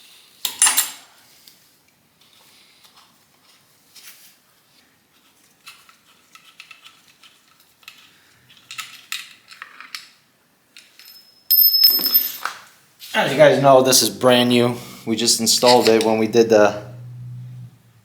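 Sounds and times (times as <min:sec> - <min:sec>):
metal tools clinking and scraping: 0:00.5 - 0:01.1, 0:10.8 - 0:12.5, 0:15.1 - 0:16.7.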